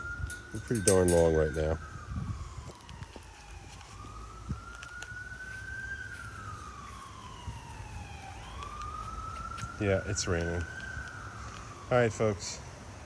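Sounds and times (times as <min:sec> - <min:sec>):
emergency vehicle siren wailing: 0:00.0 - 0:13.0.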